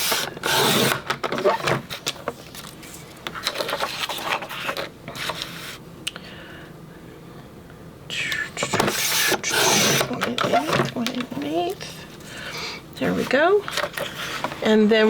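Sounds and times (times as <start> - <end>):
paper trimmer clicks and scrapes: 0.0 - 2.1, 8.7 - 11.2
paper rustling: 1.3 - 5.8.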